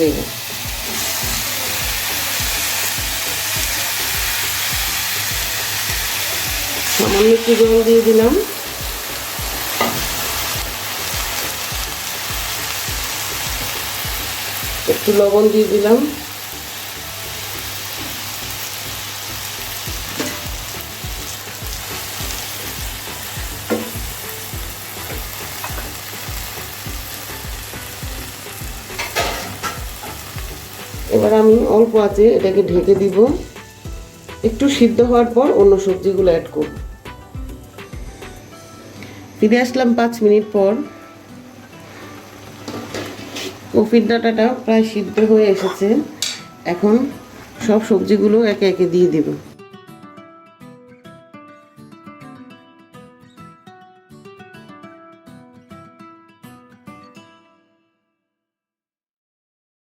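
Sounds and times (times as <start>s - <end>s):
background music with low beat: 0.0s - 14.9s, 19.4s - 38.9s
sizzling hiss from cooking pan: 0.0s - 49.5s.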